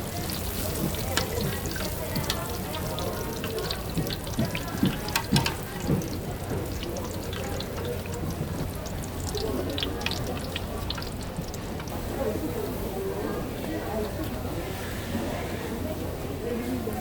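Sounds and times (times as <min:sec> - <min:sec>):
frying oil sizzling: 0:00.0 - 0:13.0
sharp clicks and clacks: 0:00.8 - 0:12.0.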